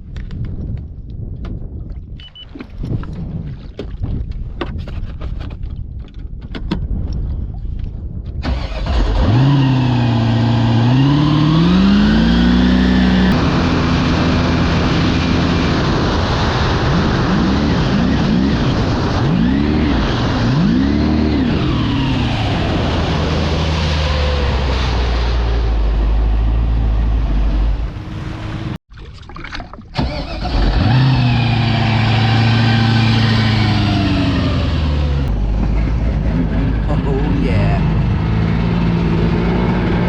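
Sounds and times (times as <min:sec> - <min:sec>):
wind and water rushing: 0:08.4 - 0:40.0
jet ski engine running: 0:08.6 - 0:24.7, 0:30.0 - 0:38.4.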